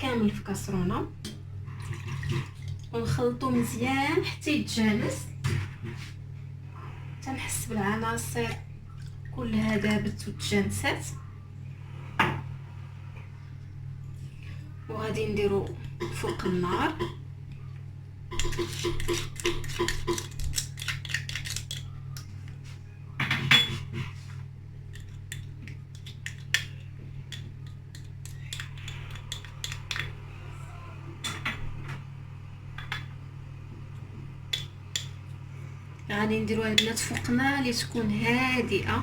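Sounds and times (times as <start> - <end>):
steady low hum: 0.0 - 39.0.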